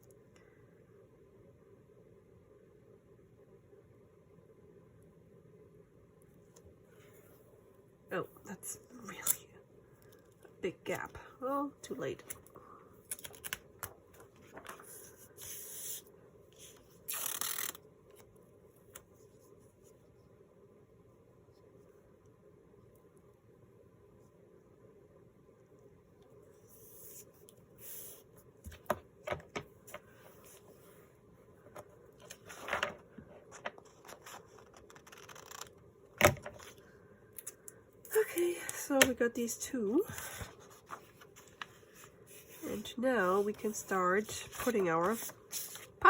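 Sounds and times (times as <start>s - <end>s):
paper sliding over paper: 14.5s - 16.8s, 26.6s - 28.3s, 40.1s - 46.0s.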